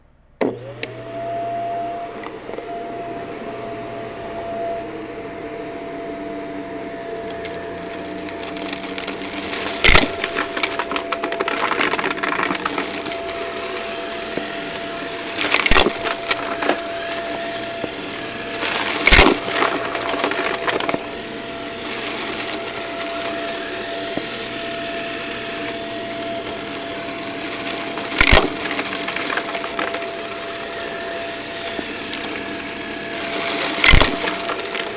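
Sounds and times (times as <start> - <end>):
vacuum cleaner whine: 0.4 - 34.9
debris crackling and rattling: 7.1 - 34.9.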